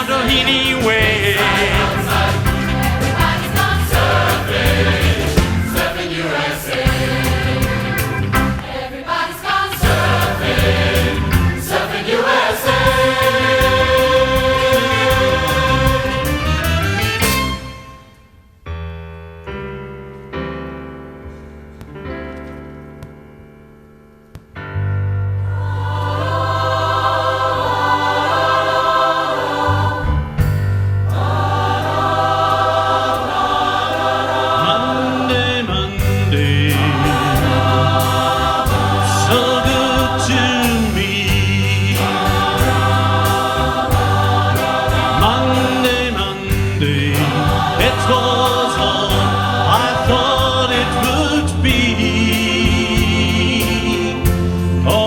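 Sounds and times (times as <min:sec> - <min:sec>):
band with bass line: 0:00.0 - 0:08.8, 0:09.8 - 0:18.1, 0:24.8 - 0:55.0
ticking drum beat: 0:00.0 - 0:08.8, 0:09.8 - 0:17.6, 0:36.0 - 0:55.0
choir singing in harmony: 0:00.0 - 0:17.7, 0:25.4 - 0:55.0.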